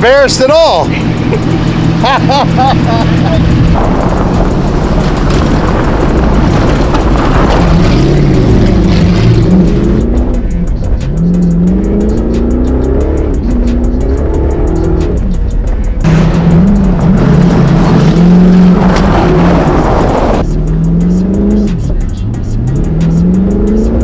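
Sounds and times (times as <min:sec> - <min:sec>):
tyres on gravel: 0:00.0 - 0:11.2, 0:15.5 - 0:20.4
rally car engine revving: 0:00.0 - 0:24.0.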